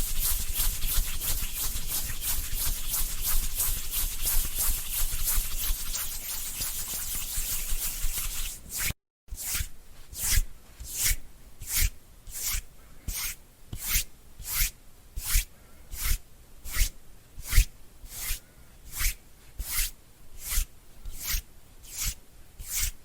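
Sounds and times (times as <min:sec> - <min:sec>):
hands rubbing together: 0:00.0 - 0:08.9.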